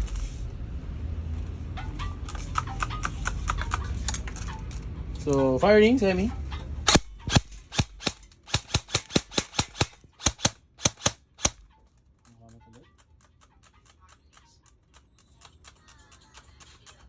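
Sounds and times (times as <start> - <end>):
airsoft gun shots: 6.9 - 11.7.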